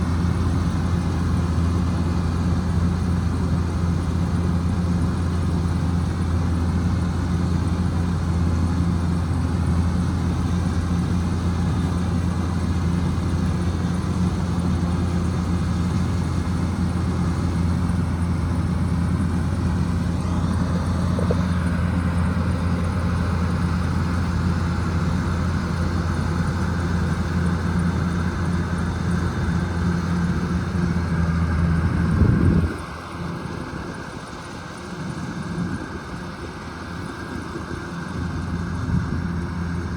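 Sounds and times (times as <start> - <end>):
combine harvester droning: 0.0 - 39.9.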